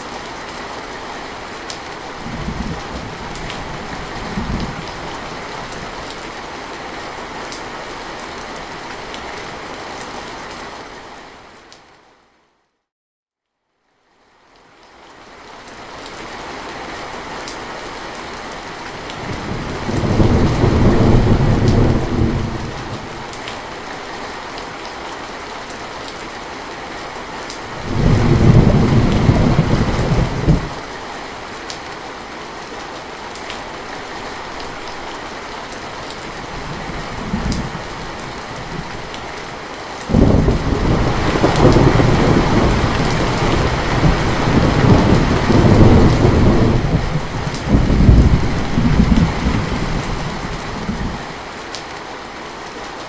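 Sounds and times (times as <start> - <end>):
steady rain falling: 0.0 - 12.4, 13.8 - 53.0
rolling thunder: 19.2 - 23.2, 27.8 - 30.8, 40.1 - 51.3.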